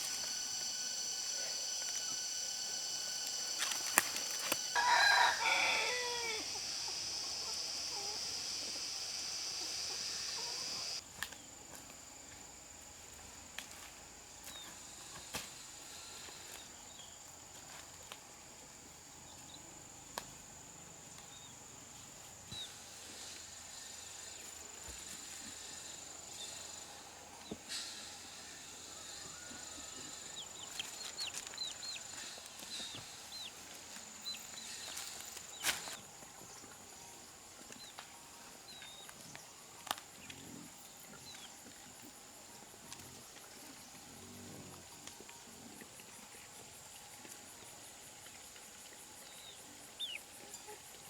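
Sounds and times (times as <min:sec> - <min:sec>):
high-pitched insect drone: 0:00.0 - 0:11.0, 0:22.6 - 0:36.0
rooster crowing: 0:04.5 - 0:08.6.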